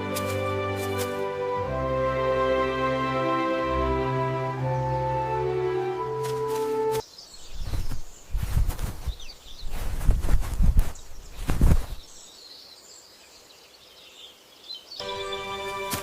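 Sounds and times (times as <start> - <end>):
music with sustained tones: 0.0 - 7.0, 15.0 - 16.0
birds chirping faintly: 4.2 - 16.0.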